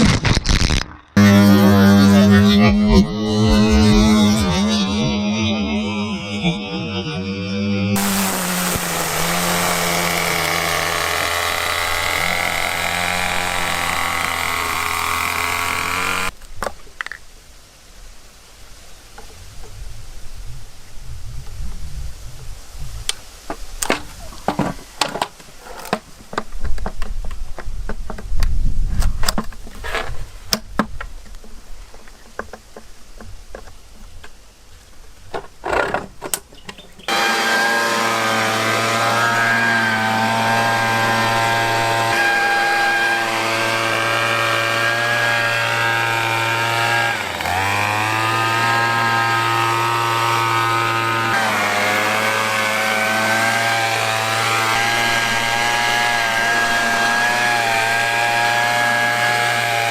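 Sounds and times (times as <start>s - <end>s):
two-stroke trimmer engine running: 8.0s - 16.3s, 37.1s - 59.9s
handling knocks and clicks: 23.8s - 29.9s.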